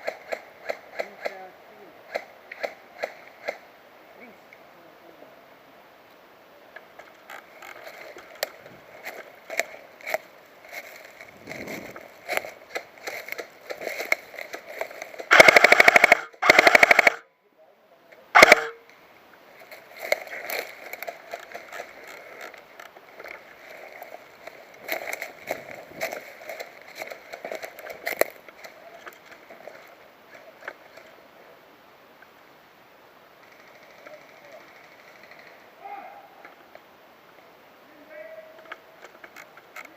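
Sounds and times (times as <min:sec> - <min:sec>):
rustling of movement: 0:00.0 - 0:17.2, 0:18.1 - 0:32.7
faint hiss: 0:01.4 - 0:12.7, 0:28.4 - 0:39.9
crunching and clicking: 0:07.0 - 0:17.2, 0:19.6 - 0:31.1
airsoft gun firing bursts: 0:15.3 - 0:17.2, 0:18.4 - 0:18.8.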